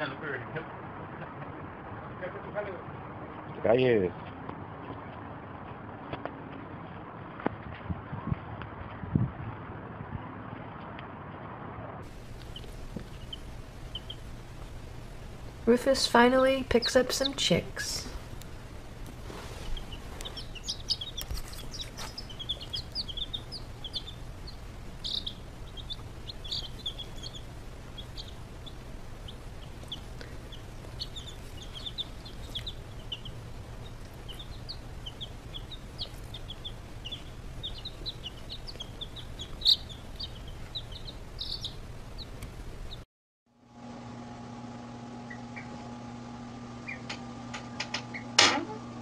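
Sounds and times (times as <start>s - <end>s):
steady low hum: 0.0s - 43.0s, 43.6s - 49.0s
baby chicks peeping: 12.0s - 43.0s, 45.2s - 48.4s.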